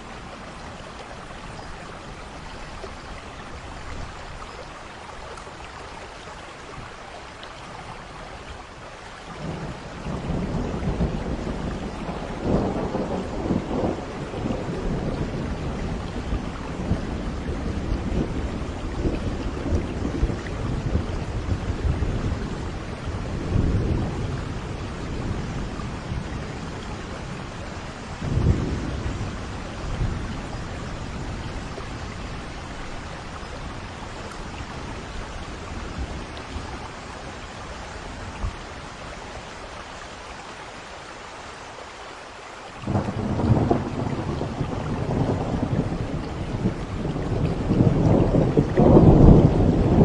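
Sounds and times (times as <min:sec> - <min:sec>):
heavy rain: 0:00.0 - 0:50.0
rolling thunder: 0:09.4 - 0:37.3, 0:42.8 - 0:50.0.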